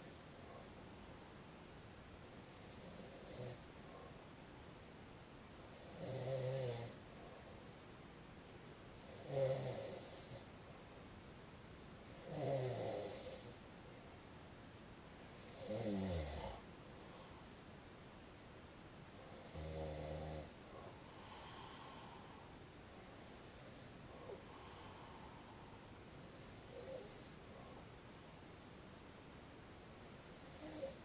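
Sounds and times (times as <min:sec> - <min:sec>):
man snoring: 0:02.4 - 0:03.6, 0:05.7 - 0:07.0, 0:09.0 - 0:10.4, 0:12.1 - 0:13.6, 0:15.3 - 0:16.6, 0:19.2 - 0:20.5, 0:23.0 - 0:23.9, 0:26.3 - 0:27.4, 0:30.2 - 0:31.0
weak breaths: 0:20.7 - 0:27.9.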